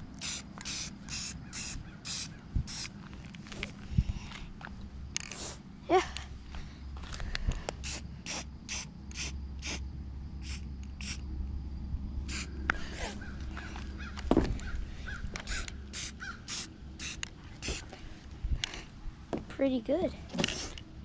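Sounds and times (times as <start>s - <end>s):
spray paint can hissing: 0.0s - 2.9s, 7.8s - 9.8s, 10.4s - 11.2s, 12.3s - 13.2s, 15.4s - 17.9s.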